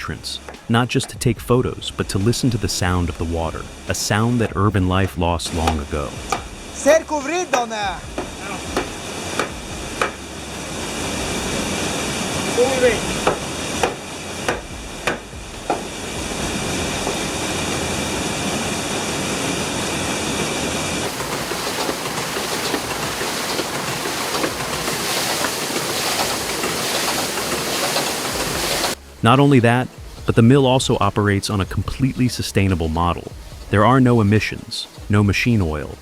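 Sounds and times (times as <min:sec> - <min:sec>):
water rushing in stream: 0:00.0 - 0:36.0
sharp knocks: 0:05.6 - 0:06.6, 0:07.5 - 0:10.2, 0:13.1 - 0:17.3.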